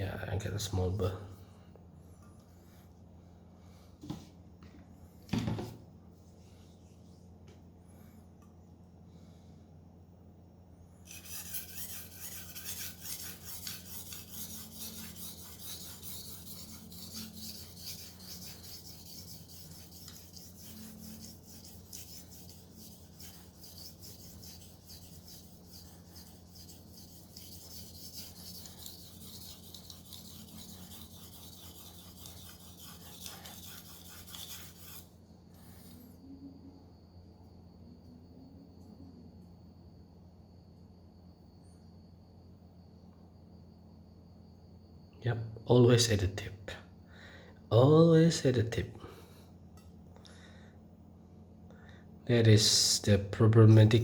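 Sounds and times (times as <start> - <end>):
knife scraping on whetstone: 11.0 - 35.1.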